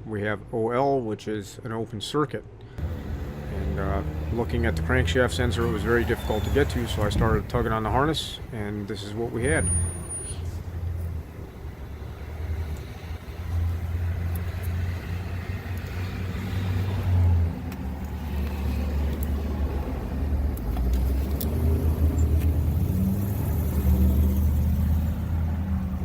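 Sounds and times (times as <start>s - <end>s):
engine running unevenly: 2.8s - 8.5s.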